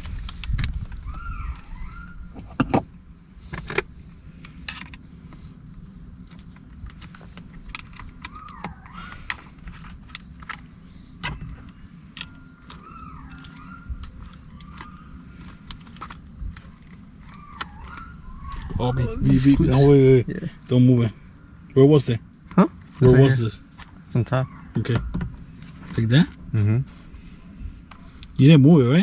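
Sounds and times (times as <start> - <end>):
swooping whistled chirps: 0.9 - 2.5, 8.2 - 9.5, 12.2 - 15.9, 16.7 - 19.9
tools clicking on car parts: 6.3 - 18.7.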